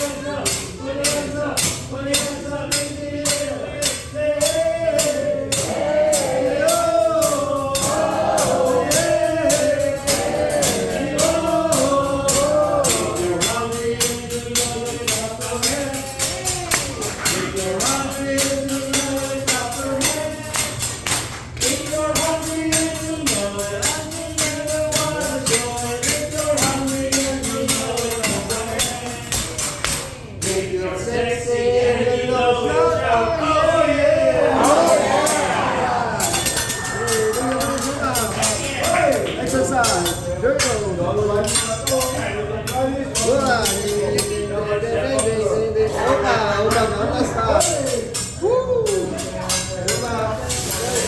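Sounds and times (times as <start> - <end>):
fast tambourine-like beat: 0.4 - 30.5, 36.2 - 40.8
person singing: 21.6 - 39.5.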